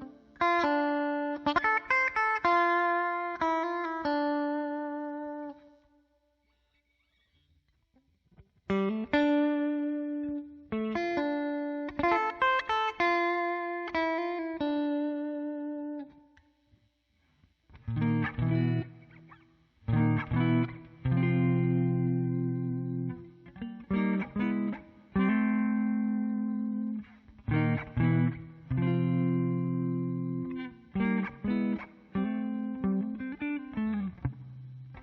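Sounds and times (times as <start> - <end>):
guitar chords strummed: 0.0 - 5.7, 8.7 - 16.2, 17.7 - 35.0
electric guitar single notes: 17.8 - 35.0.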